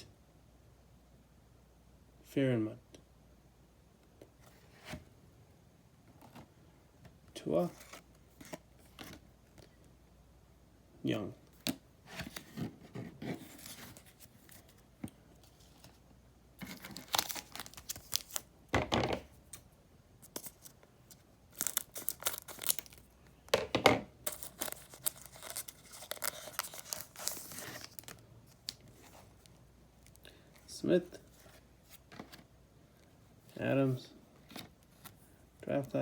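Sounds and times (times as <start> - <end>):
foil wrapper tearing and crinkling: 16.7 - 18.4, 21.6 - 23.1, 24.3 - 28.9.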